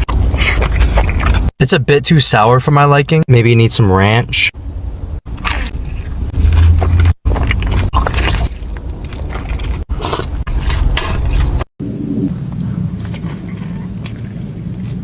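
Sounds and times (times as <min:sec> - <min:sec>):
chewing and crunching food: 0:00.0 - 0:01.5, 0:05.3 - 0:11.7.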